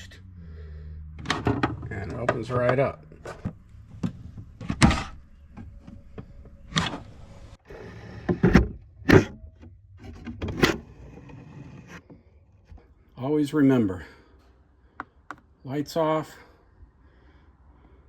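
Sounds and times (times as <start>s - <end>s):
drawer sliding in runners: 10.0s - 12.0s.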